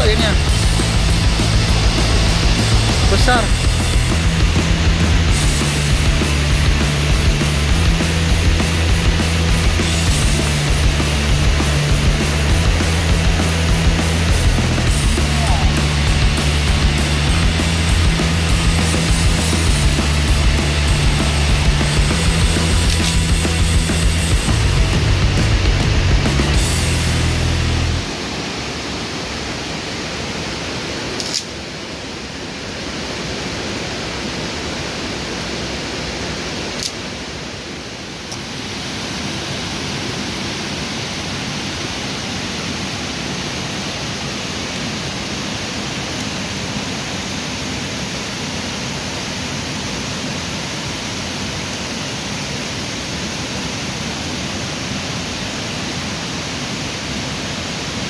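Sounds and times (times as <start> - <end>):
rushing river water: 0.0 - 58.0
short clicks: 31.2 - 31.5.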